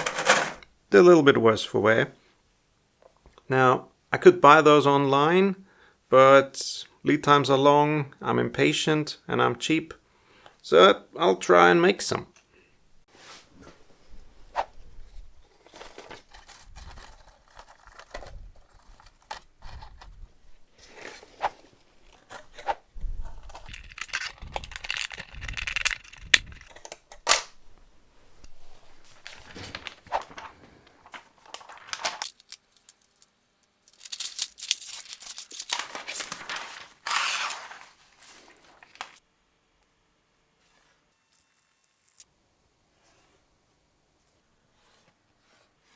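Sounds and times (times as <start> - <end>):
plastic film crinkling and tearing: 16.0 - 20.2, 23.4 - 26.9, 28.9 - 39.2.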